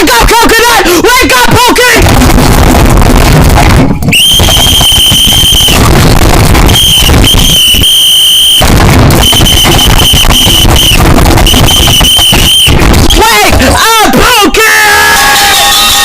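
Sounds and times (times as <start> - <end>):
shrill alarm tone blaring: 4.1 - 13.8, 14.8 - 16.0.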